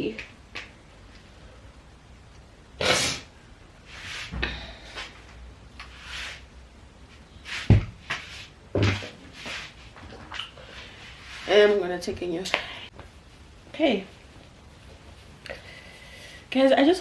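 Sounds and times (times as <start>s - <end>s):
objects knocking and rustling: 7.6s - 10.6s.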